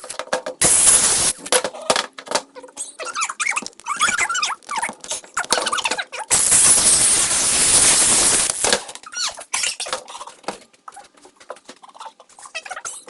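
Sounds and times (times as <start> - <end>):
power tool cutting into metal: 0.6 - 1.4, 6.3 - 8.7
high squeaky whines: 2.7 - 9.9.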